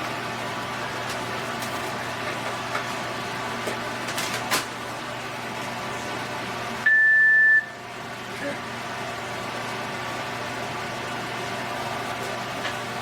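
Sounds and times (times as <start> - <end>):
electronic beep: 6.9 - 7.7.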